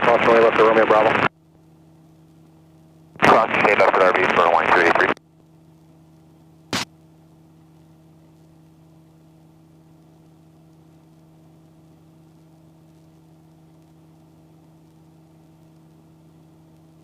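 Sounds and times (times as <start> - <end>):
intercom hum with hiss: 0.0 - 1.3, 3.2 - 5.2.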